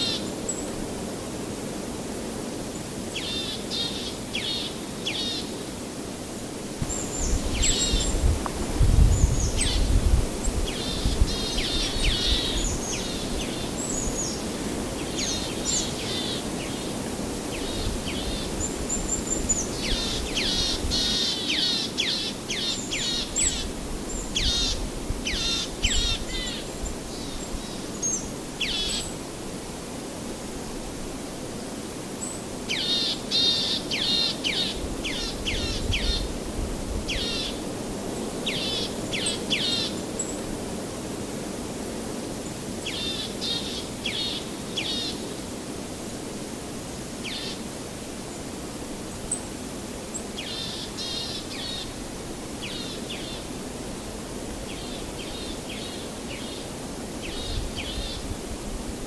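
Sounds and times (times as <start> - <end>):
songbirds chirping: 6.8 - 29.3.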